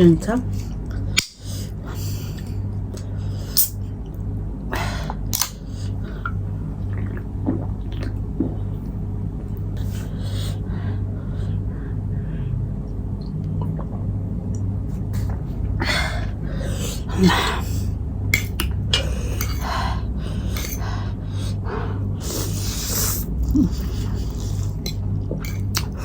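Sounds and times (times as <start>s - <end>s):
low hum: 0.0s - 26.0s
person chewing food: 16.7s - 21.6s, 22.2s - 26.0s.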